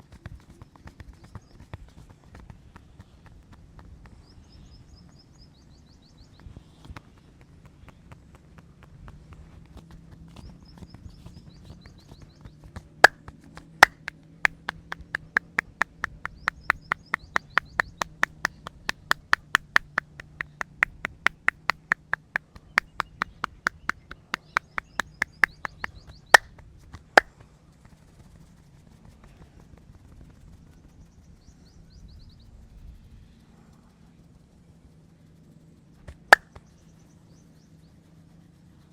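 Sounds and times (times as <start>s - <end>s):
hand claps and slaps: 13.0s - 13.2s, 13.8s - 26.5s.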